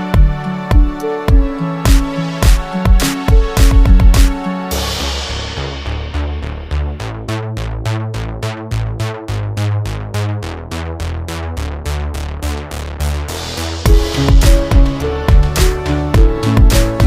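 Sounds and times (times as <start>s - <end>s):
drum-machine beat: 0.0s - 6.6s, 13.4s - 17.0s
synthesizer bass notes: 0.0s - 17.0s.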